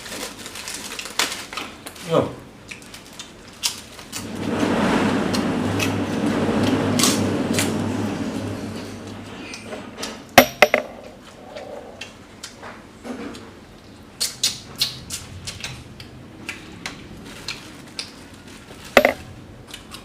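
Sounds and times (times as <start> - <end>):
eating clicks and crunches: 2.6 - 4.2, 14.2 - 18.5.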